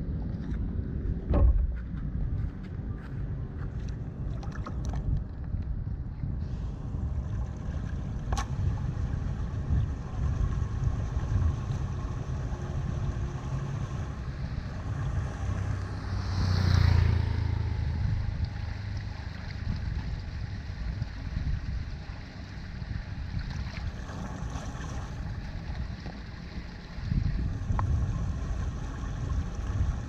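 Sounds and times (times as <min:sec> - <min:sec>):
rushing water: 0:06.6 - 0:30.0.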